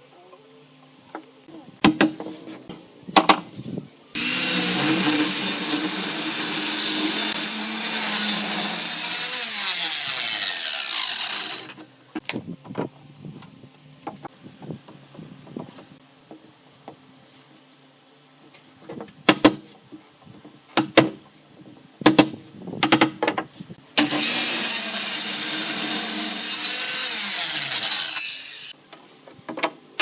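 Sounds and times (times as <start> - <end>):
power tool whining: 4.2 - 11.8, 24.0 - 28.7.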